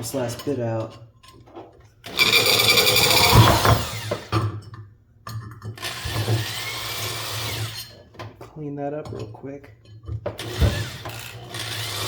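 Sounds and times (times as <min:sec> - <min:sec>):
electric drill drilling metal: 0:02.1 - 0:04.4, 0:05.8 - 0:08.0, 0:10.4 - 0:12.0.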